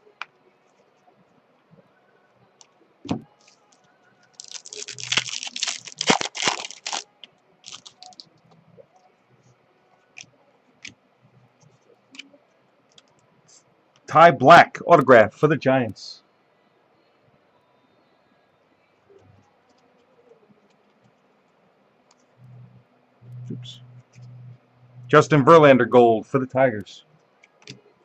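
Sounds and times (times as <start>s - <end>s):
cards ticking: 2.6s - 8.6s
wrapper crinkling: 4.3s - 8.3s.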